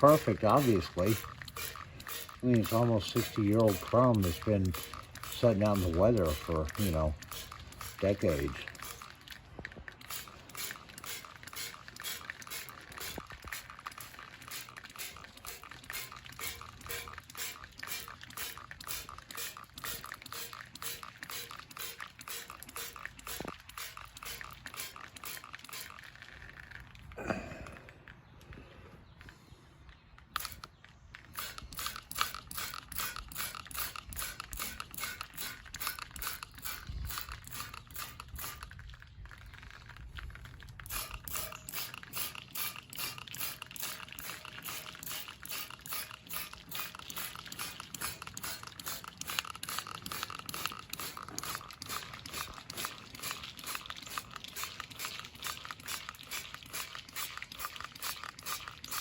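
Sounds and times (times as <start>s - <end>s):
hand scrubbing on chrome: 0.0s - 26.4s, 40.8s - 59.0s.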